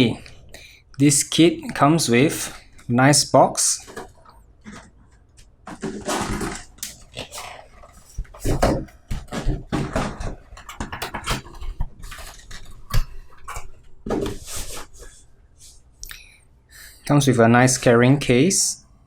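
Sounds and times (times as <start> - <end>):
cardboard and plastic packaging rustling: 1.7 - 15.8.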